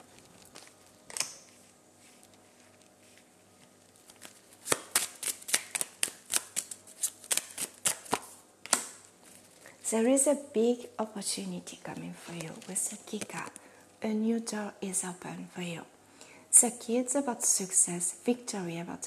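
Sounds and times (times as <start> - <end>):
cards shuffled by hand: 0.0 - 9.7
card slaps: 4.6 - 9.0
card snap: 4.6 - 9.0.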